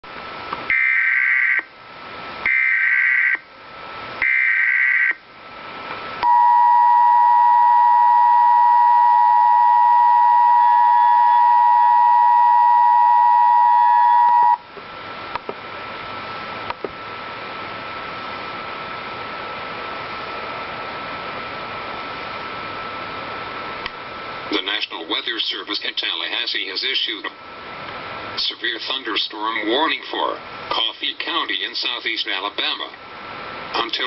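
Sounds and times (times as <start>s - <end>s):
faint static: 0.0s - 34.0s
two-tone alert signal: 6.2s - 14.6s.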